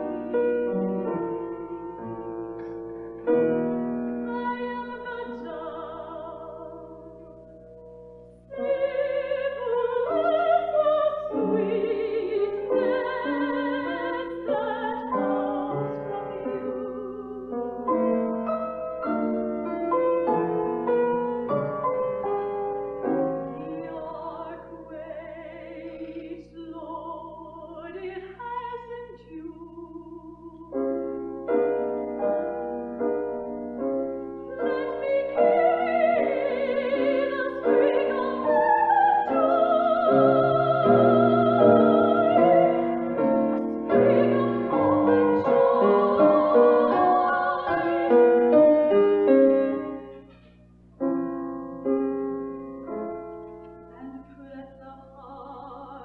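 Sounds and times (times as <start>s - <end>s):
piano accompaniment: 0.0s - 56.0s
woman singing operatically: 4.2s - 7.3s, 8.5s - 17.6s, 23.5s - 30.8s, 34.5s - 48.6s, 54.0s - 56.0s.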